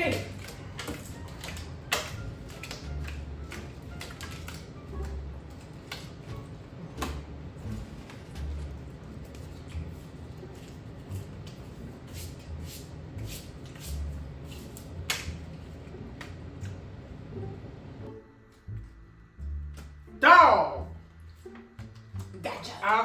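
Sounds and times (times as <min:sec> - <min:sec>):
background music bass notes: 0:00.0 - 0:23.0
card snap: 0:00.1 - 0:05.2, 0:14.8 - 0:15.4
cards clicking on a table: 0:00.1 - 0:06.2, 0:14.5 - 0:15.4.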